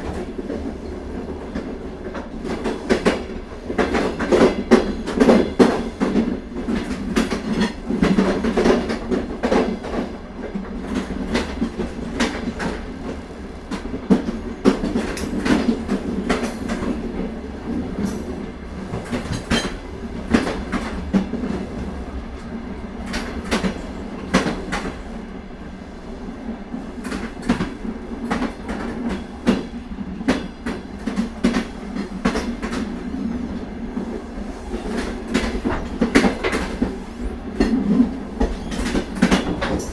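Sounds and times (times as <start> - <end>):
train rumble: 0.0 - 39.9
wheels clicking over rail joints: 13.7 - 21.6.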